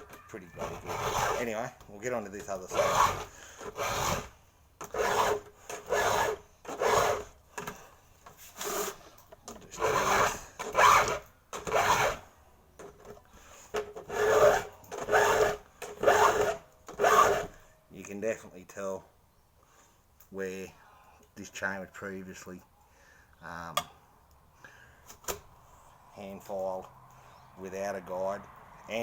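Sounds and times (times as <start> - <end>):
file rasping on saw chain: 0.3 - 1.6, 2.4 - 7.7, 8.6 - 9.0, 9.7 - 12.2, 14.0 - 17.6.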